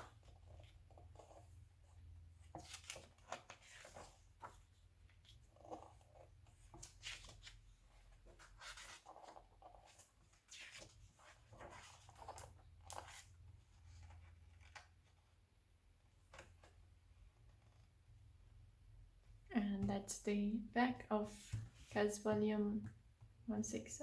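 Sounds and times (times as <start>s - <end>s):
magazine pages rustling: 2.5s - 13.3s.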